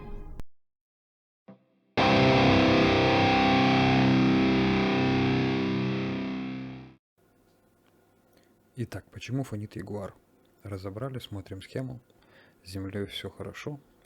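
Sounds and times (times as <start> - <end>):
distorted electric guitar chord: 2.0 - 7.0.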